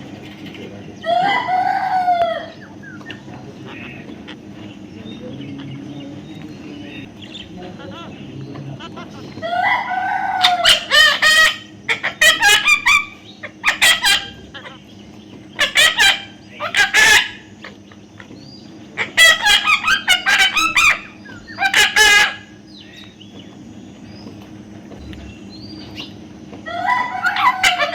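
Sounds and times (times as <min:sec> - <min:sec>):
parrot squawking: 0:00.2 - 0:04.9, 0:06.8 - 0:14.9, 0:15.6 - 0:17.9, 0:19.0 - 0:22.9, 0:26.7 - 0:27.9.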